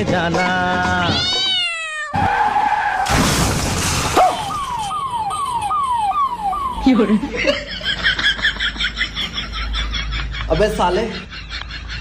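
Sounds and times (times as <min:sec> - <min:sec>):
falling siren-like tone: 0:04.2 - 0:07.6.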